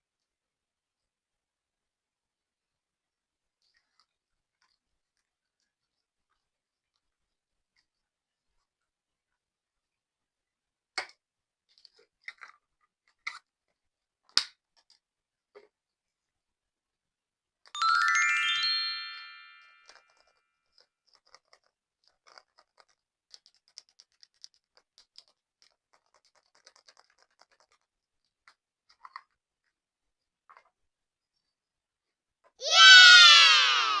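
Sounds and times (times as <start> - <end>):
rising chime tones: 17.8 - 19.9.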